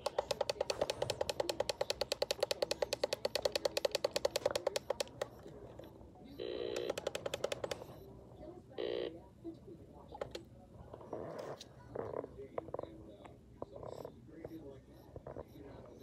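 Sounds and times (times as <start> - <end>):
harsh buzzer tone: 6.4 - 7.3, 8.8 - 9.2.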